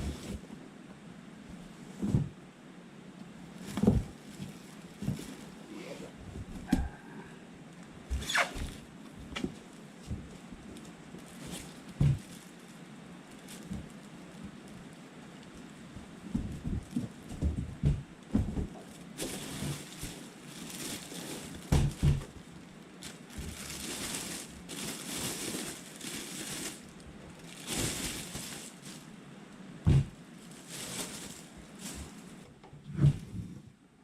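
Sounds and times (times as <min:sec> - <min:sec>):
plastic packaging crinkling: 0:10.6 - 0:15.8, 0:18.8 - 0:29.2, 0:30.4 - 0:32.4.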